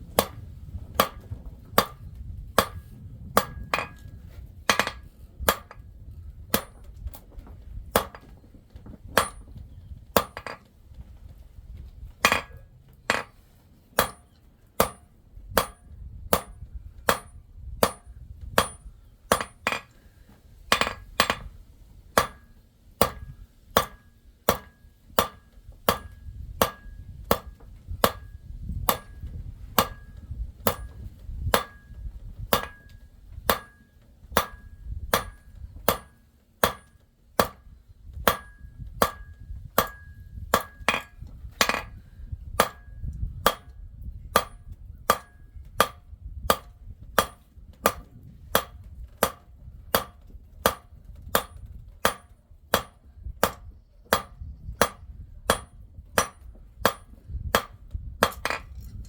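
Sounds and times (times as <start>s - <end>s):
hammer striking metal on anvil: 0.2s - 0.4s, 1.0s - 2.0s, 2.6s - 2.8s, 3.4s - 4.1s, 4.7s - 5.8s, 9.2s - 9.5s, 10.2s - 10.6s, 12.2s - 13.4s, 14.0s - 19.9s, 20.7s - 21.5s, 22.2s - 28.3s, 28.9s - 29.2s, 29.8s - 31.9s, 32.5s - 33.8s, 34.4s - 37.6s, 38.3s - 41.9s, 42.6s - 42.9s, 43.5s - 43.7s, 44.4s - 49.4s, 50.0s - 50.8s, 51.4s - 58.7s.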